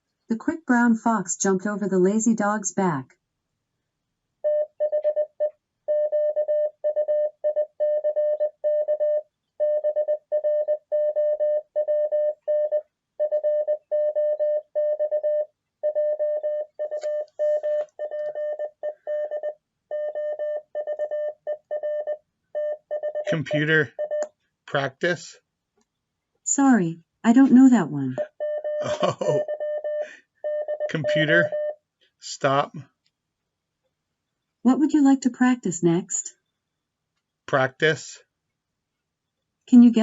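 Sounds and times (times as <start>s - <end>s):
morse code beeps: 4.4s - 24.2s, 27.3s - 31.8s.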